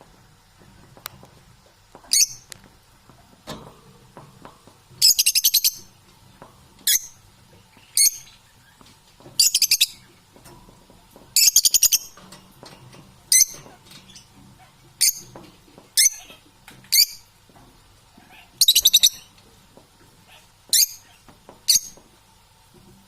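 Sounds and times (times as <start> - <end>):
parrot calling: 16.0 - 17.2, 18.2 - 19.3.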